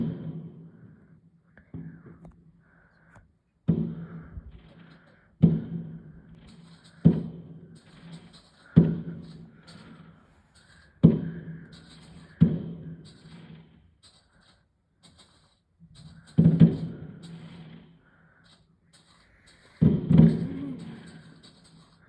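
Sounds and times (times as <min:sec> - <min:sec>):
fireworks bursts: 0:05.7 - 0:22.0.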